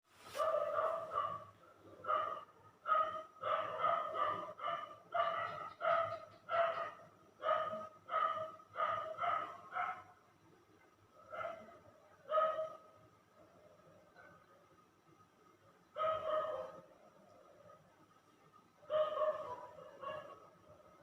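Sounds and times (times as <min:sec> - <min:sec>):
dog barking: 0:00.3 - 0:10.2, 0:11.3 - 0:12.9, 0:16.0 - 0:16.9, 0:18.9 - 0:20.5.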